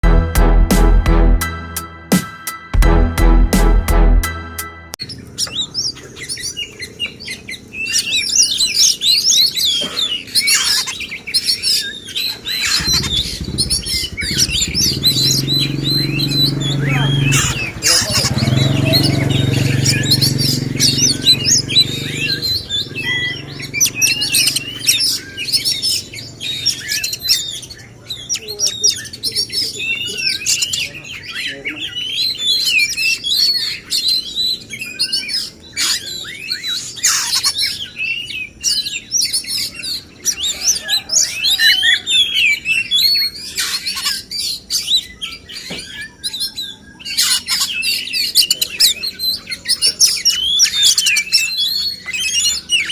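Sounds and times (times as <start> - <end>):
low hum: 0.0 - 2.1
bird singing varied whistles: 11.9 - 25.7.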